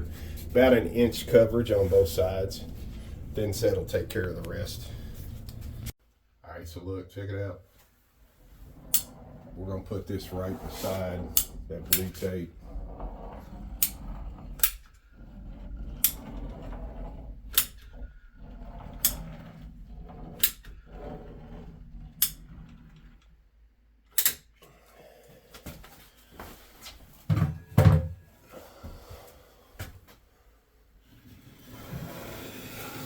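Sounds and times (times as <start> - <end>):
mortar scraping: 8.5 - 17.4
metal tool clicking: 24.2 - 24.4
knock and thump: 27.3 - 28.2.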